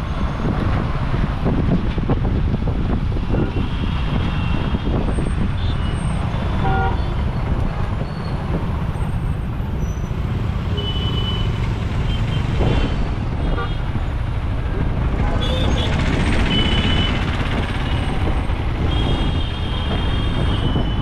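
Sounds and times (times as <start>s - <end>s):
road and wind rumble: 0.0s - 21.0s
vehicle horns tooting: 5.6s - 7.2s, 10.6s - 12.6s, 15.2s - 17.3s, 18.8s - 21.0s.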